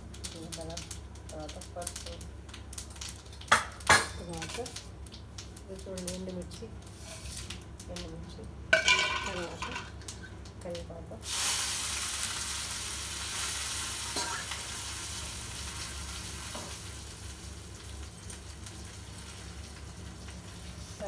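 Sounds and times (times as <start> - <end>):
spices sizzling in hot oil: 0.0 - 21.0.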